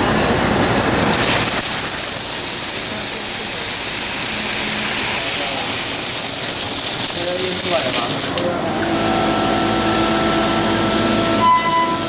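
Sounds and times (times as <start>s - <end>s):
machine cutting and spray hiss: 0.0s - 12.0s.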